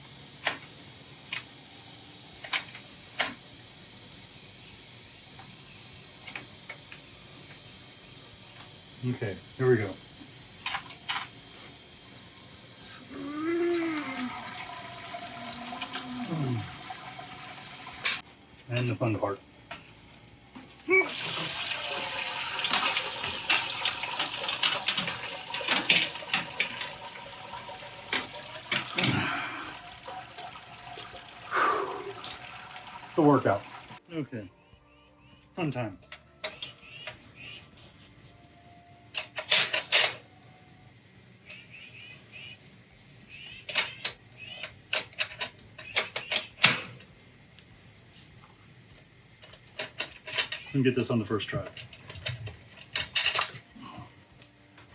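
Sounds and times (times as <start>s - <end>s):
liquid pouring and splashing: 21.1s - 34.0s
metal basket clanking on kettle: 21.9s - 29.3s.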